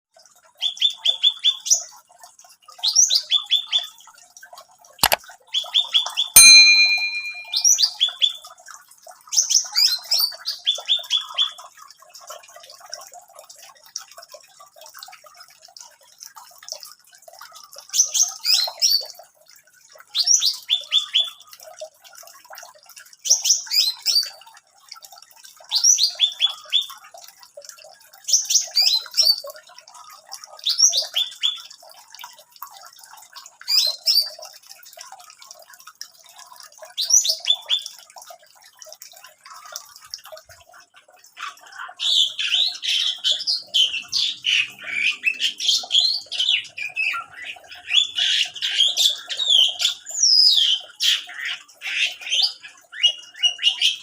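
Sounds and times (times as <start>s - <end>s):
brief steady ringing tone: 6.4s - 7.7s
songbird singing: 6.4s - 7.8s.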